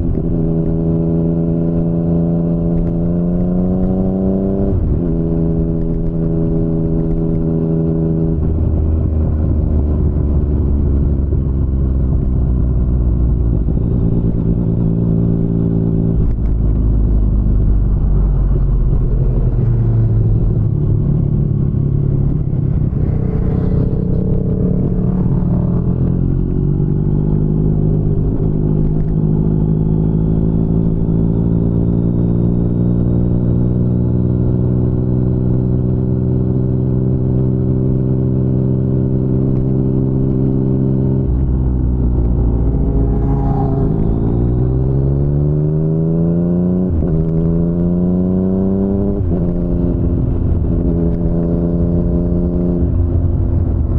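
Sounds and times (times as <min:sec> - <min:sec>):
motorcycle engine revving: 0:13.6 - 0:53.9.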